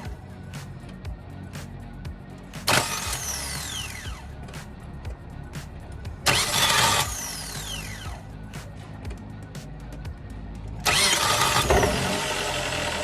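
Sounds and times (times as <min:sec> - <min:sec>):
starter whine winding down: 0:02.5 - 0:09.0, 0:10.6 - 0:13.0
starter motor cranking: 0:02.6 - 0:04.5, 0:06.2 - 0:08.3, 0:10.8 - 0:13.0.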